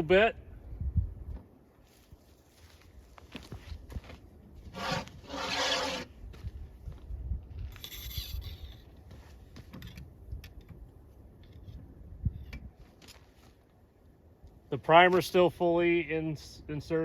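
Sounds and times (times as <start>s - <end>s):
shell hull scraping in chamber: 4.7s - 6.1s.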